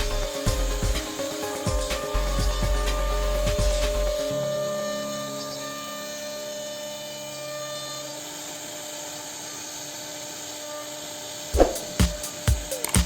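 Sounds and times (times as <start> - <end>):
background music with heavy beat: 0.0 - 4.3, 11.6 - 13.0.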